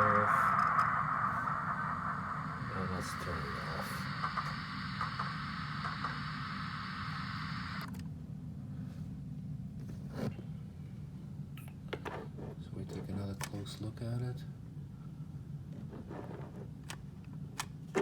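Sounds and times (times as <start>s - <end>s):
hissy model engine sound: 0.0s - 7.9s
low hum: 0.0s - 7.9s.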